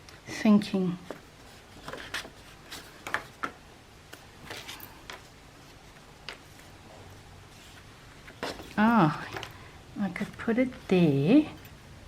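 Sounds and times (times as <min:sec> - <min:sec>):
paper taps and rustles: 0:01.0 - 0:05.3.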